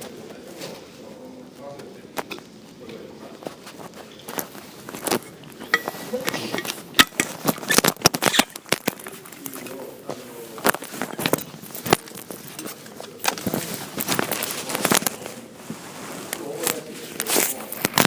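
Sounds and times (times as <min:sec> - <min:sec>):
crackling and sharp clicks: 0:06.6 - 0:09.5, 0:16.3 - 0:18.0.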